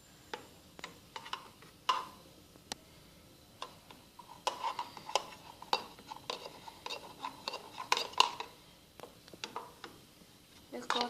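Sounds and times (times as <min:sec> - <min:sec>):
containers clicking and knocking: 0:04.4 - 0:10.0, 0:10.8 - 0:11.0.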